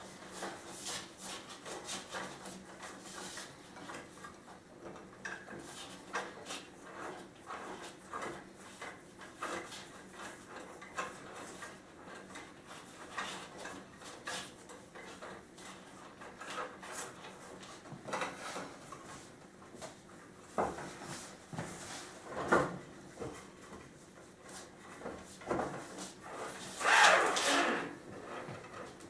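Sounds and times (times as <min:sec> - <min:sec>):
cable scraping through wood: 0:26.8 - 0:28.0.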